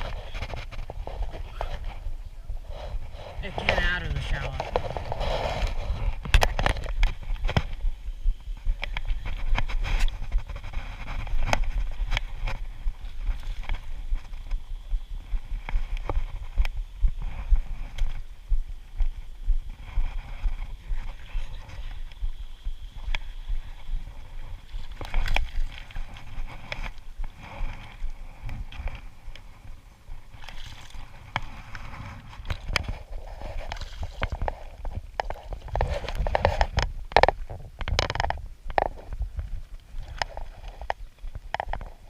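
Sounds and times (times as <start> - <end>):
steady low rumble: 0.0 - 42.0
gear knocking against kayak: 30.2 - 42.0.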